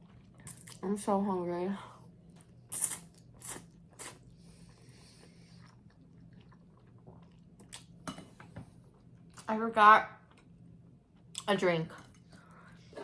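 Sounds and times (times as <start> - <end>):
chewing: 2.3 - 7.9.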